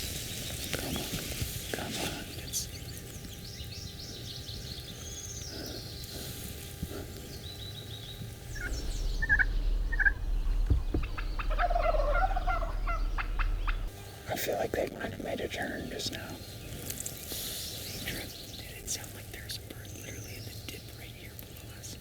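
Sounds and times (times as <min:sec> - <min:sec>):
faint songbird chirps: 0:00.0 - 0:14.3, 0:15.6 - 0:22.0
turkey gobbling: 0:08.5 - 0:14.0.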